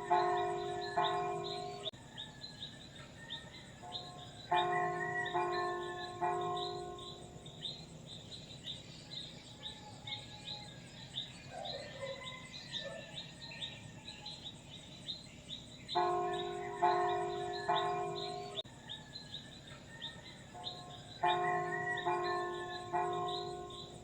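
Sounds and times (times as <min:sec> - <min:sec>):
church bell ringing: 0:00.0 - 0:02.0, 0:03.8 - 0:08.0, 0:15.9 - 0:18.7, 0:20.5 - 0:24.0
bird chirping: 0:00.0 - 0:24.0.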